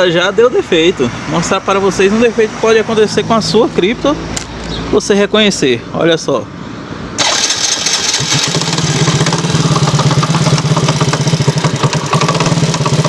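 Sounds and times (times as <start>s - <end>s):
motorcycle engine idling: 7.2s - 13.0s
engine knocking tap: 9.1s - 13.0s.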